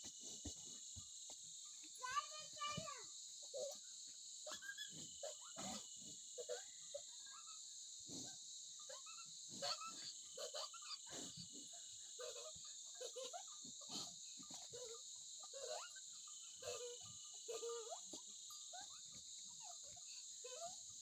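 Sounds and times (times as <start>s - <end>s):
insects chirping: 0.0s - 21.0s
animal calls: 4.5s - 21.0s.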